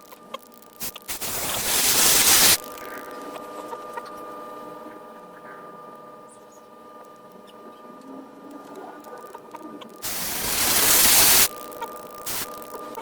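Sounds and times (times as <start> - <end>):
machine hum: 0.0 - 13.0
loud spraying hiss: 0.8 - 2.6, 10.0 - 11.5, 12.3 - 12.5.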